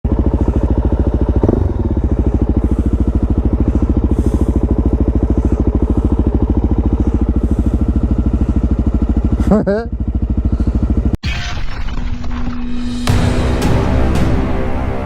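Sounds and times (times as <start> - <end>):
motorcycle engine idling: 0.0 - 11.2.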